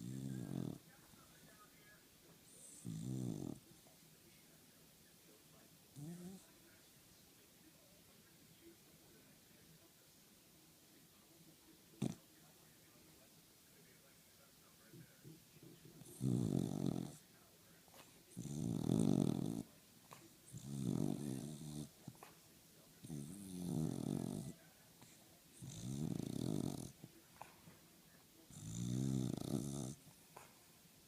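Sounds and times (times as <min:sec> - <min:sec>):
dog snoring: 0:00.0 - 0:00.9, 0:02.4 - 0:03.6, 0:05.9 - 0:06.4, 0:12.0 - 0:12.2, 0:16.0 - 0:17.3, 0:17.9 - 0:22.3, 0:23.0 - 0:27.6, 0:28.5 - 0:30.6.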